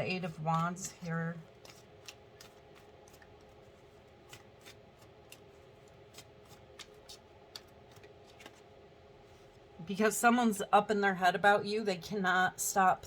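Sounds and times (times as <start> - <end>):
low room hum: 0.0 - 13.0
cards clicking while handled: 1.6 - 3.6, 4.2 - 8.6.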